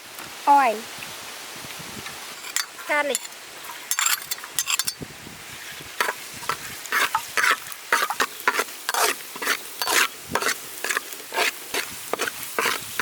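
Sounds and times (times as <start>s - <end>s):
garlic sizzling in oil: 1.7s - 13.0s
utensil scraping a pan: 2.4s - 5.0s, 5.7s - 13.0s.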